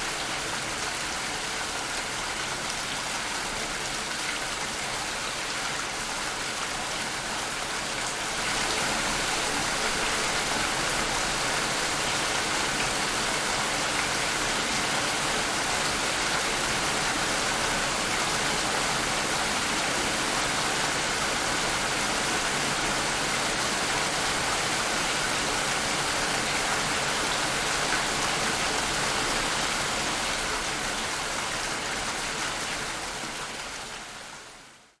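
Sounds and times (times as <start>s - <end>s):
steady rain falling: 0.0s - 35.0s.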